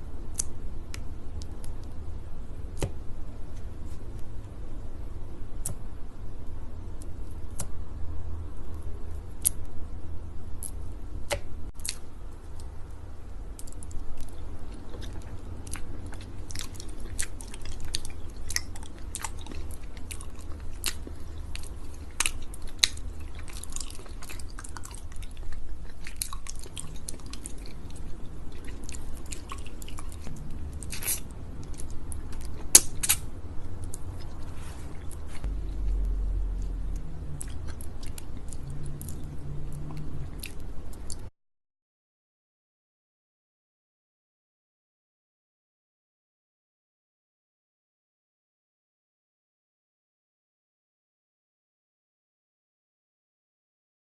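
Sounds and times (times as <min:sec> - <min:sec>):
wet sticky chewing: 0:13.6 - 0:41.3.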